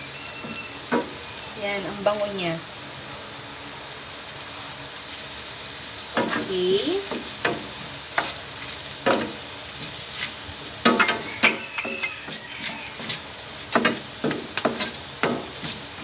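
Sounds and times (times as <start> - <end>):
onions sizzling in a pan: 0.0 - 16.0
utensil scraping and knocking pan: 7.1 - 16.0.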